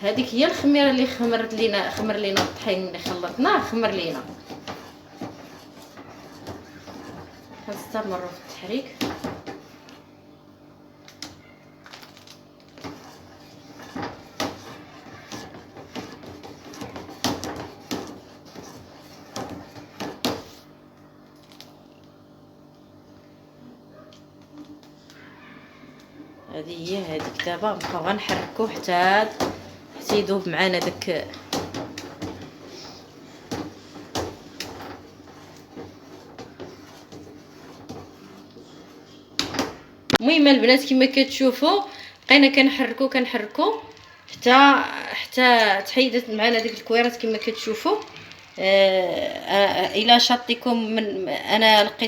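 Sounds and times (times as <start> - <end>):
spoon scraping cooking pot: 0.1 - 10.0, 12.8 - 20.5, 26.7 - 39.6.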